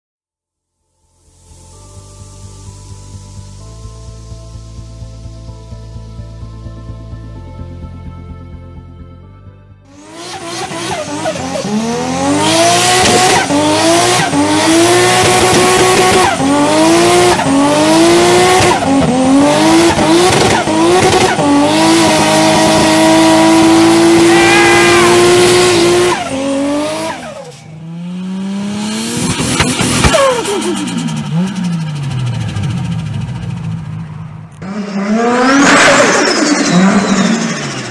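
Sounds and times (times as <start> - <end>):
car engine revving: 9.9 - 37.9.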